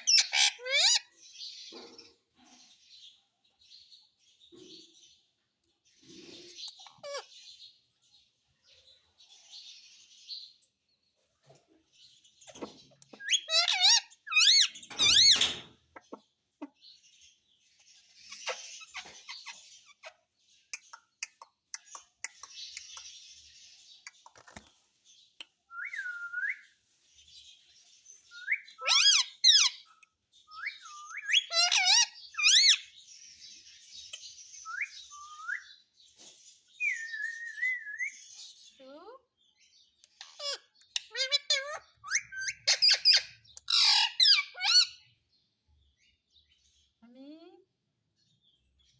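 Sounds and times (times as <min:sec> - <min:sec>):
parrot chirping and chattering: 0:00.0 - 0:02.8, 0:04.8 - 0:07.8, 0:09.6 - 0:35.9, 0:36.6 - 0:45.2.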